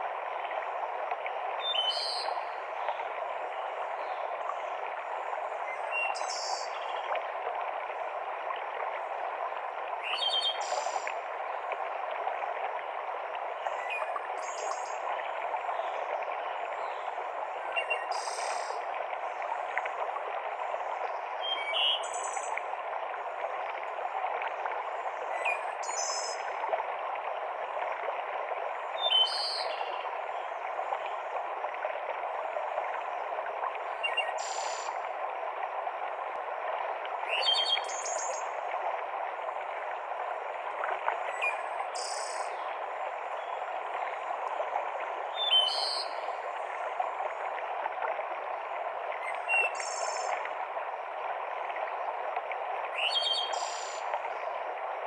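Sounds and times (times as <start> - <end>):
mountain stream cascading: 0.0 - 55.0.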